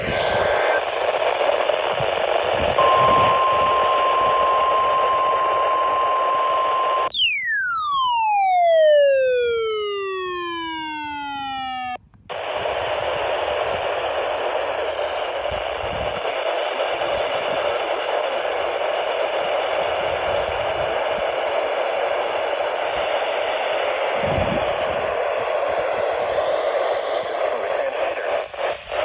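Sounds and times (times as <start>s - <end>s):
radio static hiss: 0.0s - 7.1s, 8.7s - 20.9s, 24.8s - 29.0s
falling electronic alert tone: 2.8s - 12.0s.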